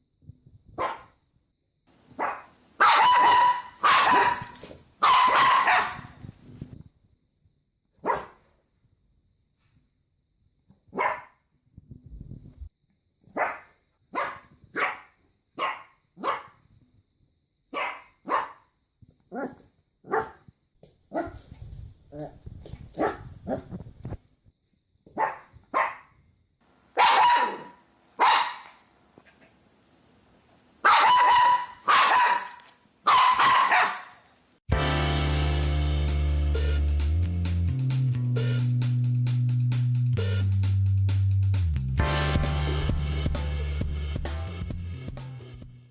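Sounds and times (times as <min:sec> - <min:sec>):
puppies barking: 0:02.2 - 0:06.1, 0:27.0 - 0:28.7, 0:30.8 - 0:34.2
music with drum beat: 0:34.7 - 0:45.9.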